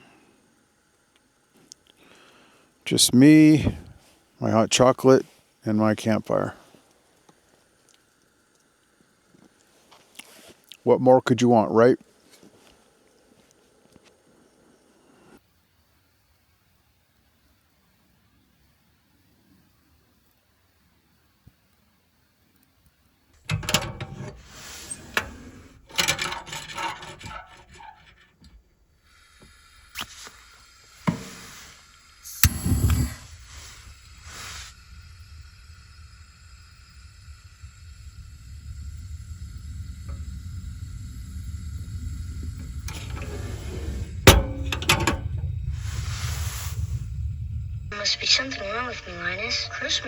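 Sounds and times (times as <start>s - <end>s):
faint steady hiss: 0.0s - 50.0s
sharp mechanical clicks and rattles: 23.5s - 28.2s
rubbing scraping and clicking: 23.5s - 30.4s, 32.3s - 47.1s
low rumble: 32.4s - 50.0s.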